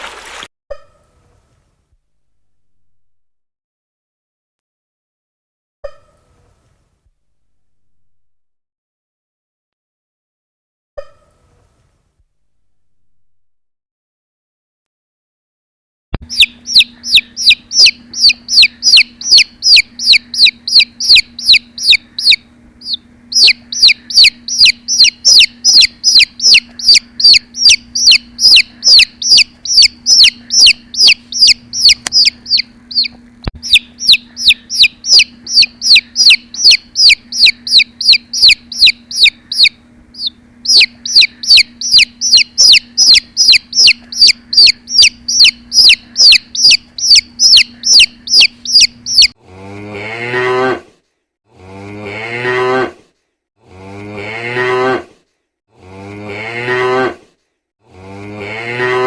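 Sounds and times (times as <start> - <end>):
rapid high chirps: 16.2 - 49.4
cow mooing: 49.4 - 50.9, 51.5 - 53.0, 53.6 - 55.1, 55.8 - 57.2, 57.9 - 59.0.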